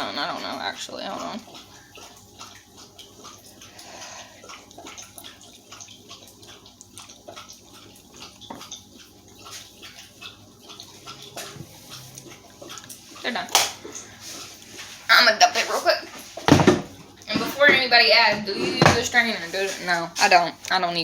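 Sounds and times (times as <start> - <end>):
water boiling and bubbling: 0.0 - 21.0.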